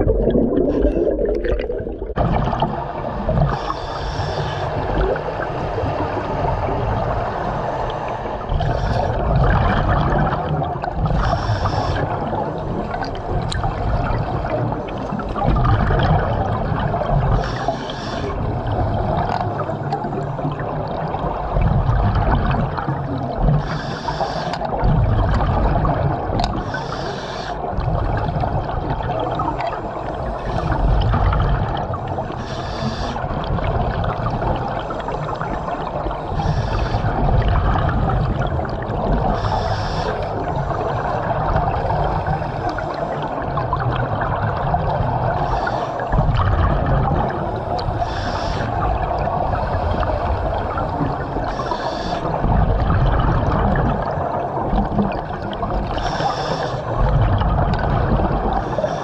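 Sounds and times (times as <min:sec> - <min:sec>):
bubbling exhaust: 0:00.0 - 0:03.8
diver breathing air hiss: 0:03.5 - 0:05.0, 0:05.6 - 0:09.2, 0:11.2 - 0:12.2, 0:17.3 - 0:19.2, 0:23.6 - 0:24.7, 0:26.6 - 0:27.7, 0:31.9 - 0:33.3, 0:34.3 - 0:37.2, 0:39.3 - 0:43.4, 0:45.4 - 0:46.2, 0:47.4 - 0:52.5, 0:55.9 - 0:57.2, 0:58.5 - 0:59.0.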